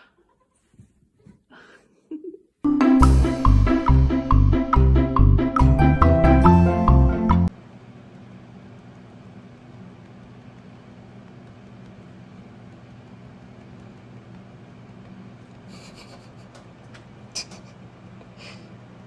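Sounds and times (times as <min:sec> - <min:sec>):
steady low hum: 0:07.4 - 0:19.0.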